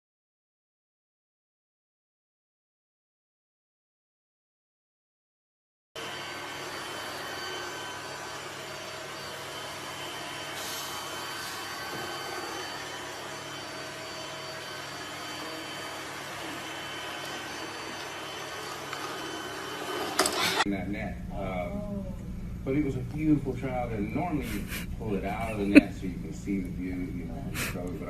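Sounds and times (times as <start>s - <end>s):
machine whirring with high whine: 6.0s - 27.4s.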